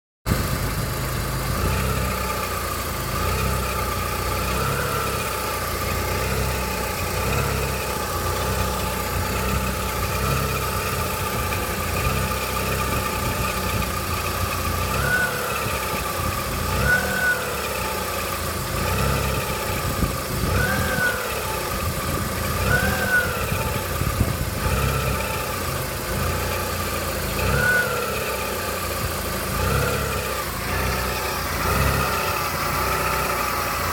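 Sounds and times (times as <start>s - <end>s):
car engine idling: 0.3s - 33.9s
high whistle from engine: 14.8s - 18.1s, 19.0s - 25.5s.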